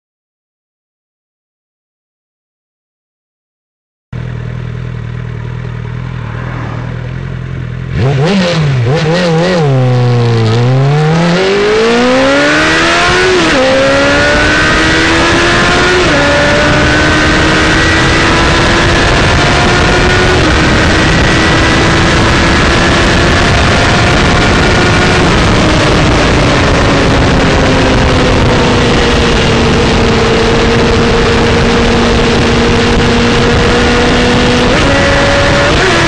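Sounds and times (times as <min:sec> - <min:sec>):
motorcycle engine revving: 0:04.2 - 0:36.0
wind rush: 0:06.1 - 0:36.0.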